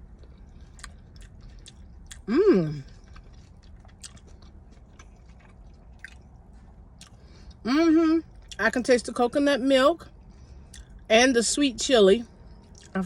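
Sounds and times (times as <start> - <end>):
person chewing food: 0.0 - 7.6, 10.2 - 11.0, 12.5 - 13.0
person humming mmm: 2.3 - 2.9.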